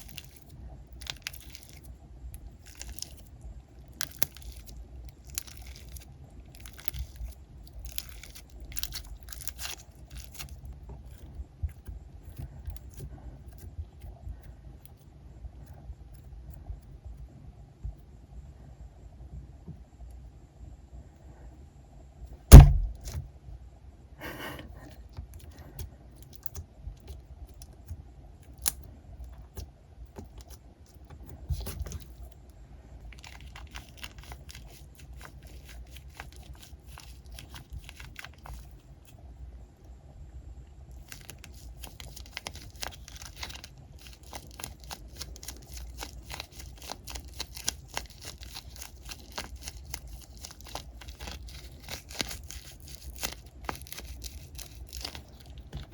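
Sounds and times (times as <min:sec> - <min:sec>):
squishy toys crackling: 0:00.0 - 0:11.3, 0:33.0 - 0:39.2, 0:40.9 - 0:55.9
sharp knock: 0:22.5 - 0:23.2.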